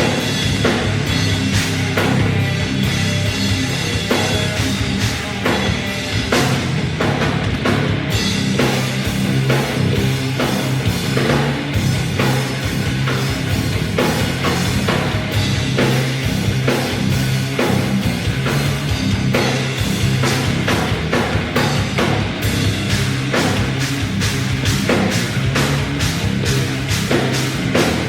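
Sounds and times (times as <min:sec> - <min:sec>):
bass guitar: 0:00.0 - 0:28.0
distorted electric guitars: 0:00.0 - 0:28.0
drum kit driving beat: 0:00.0 - 0:28.0.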